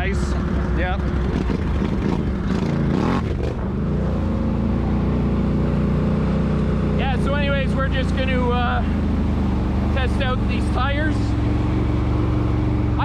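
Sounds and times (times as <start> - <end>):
atv engine running: 0.0 - 13.0.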